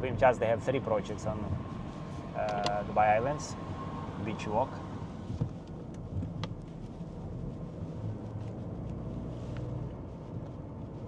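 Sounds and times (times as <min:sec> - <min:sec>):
car road and engine noise: 0:00.0 - 0:11.0.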